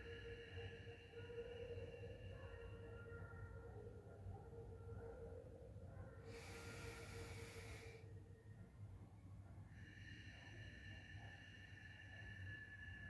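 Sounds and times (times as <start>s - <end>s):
forceful breath through nose: 6.3s - 8.0s.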